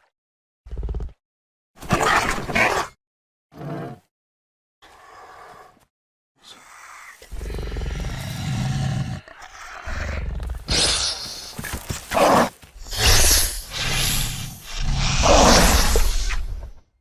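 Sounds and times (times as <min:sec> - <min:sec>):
low rumbling dinosaur growl: 0:07.3 - 0:10.8.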